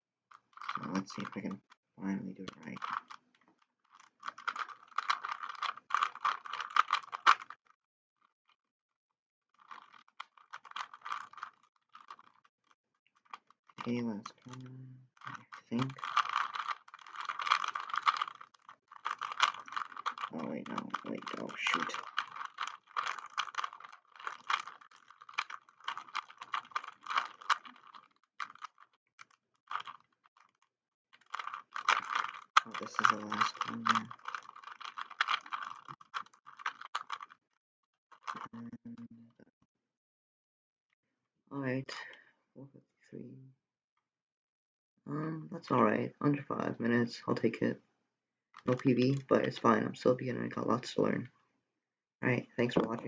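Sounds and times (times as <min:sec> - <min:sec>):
puzzle cube plastic clicking: 0:02.4 - 0:07.6, 0:09.6 - 0:12.5, 0:15.2 - 0:30.6, 0:31.2 - 0:37.4, 0:38.2 - 0:38.6, 0:48.6 - 0:51.1.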